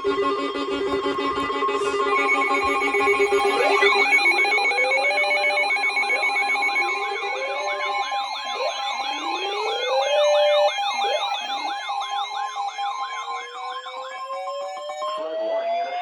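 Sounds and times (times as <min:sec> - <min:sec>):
siren-like warbling wails: 0:00.4 - 0:15.4
steady electronic alarm tones: 0:01.3 - 0:15.1
trilling telephone-like ring: 0:02.1 - 0:13.8.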